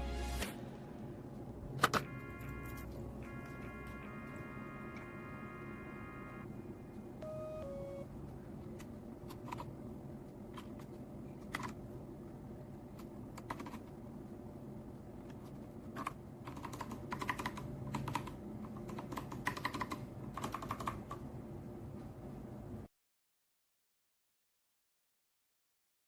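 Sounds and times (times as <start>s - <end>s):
mechanical keyboard keys clicking: 8.8s - 9.7s, 10.5s - 11.8s, 13.0s - 13.9s, 15.9s - 21.2s.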